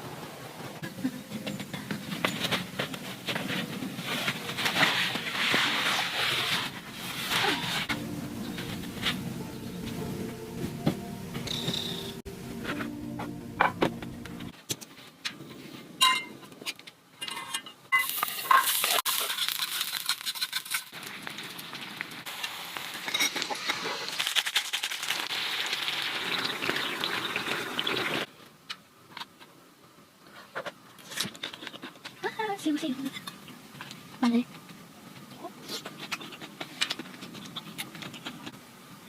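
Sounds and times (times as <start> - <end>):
food sizzling in a pan: 18.0 - 28.3.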